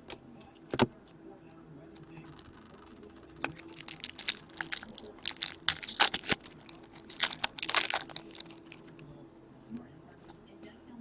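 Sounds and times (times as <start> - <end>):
trading cards clicking and rustling: 2.3 - 9.0.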